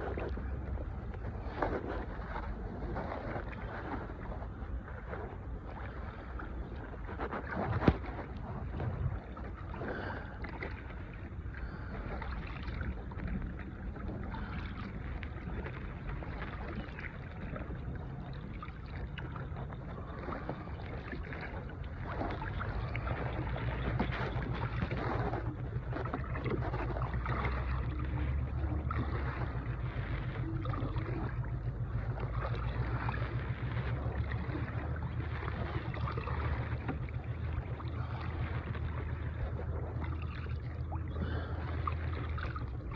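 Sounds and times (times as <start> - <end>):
water against boat hull: 0.0 - 42.9
wind on microphone: 0.0 - 42.9.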